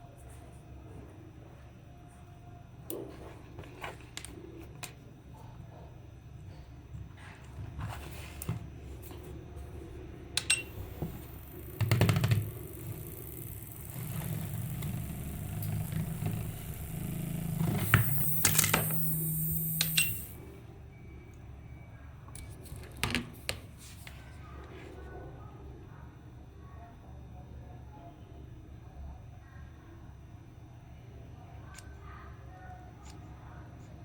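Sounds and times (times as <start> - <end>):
steady hum: 8.0 - 21.7
high-voltage device buzzing: 10.4 - 20.4
sharp electric clicks: 10.4 - 20.4
loud electric burst: 10.8 - 20.4
high hiss: 12.7 - 20.4.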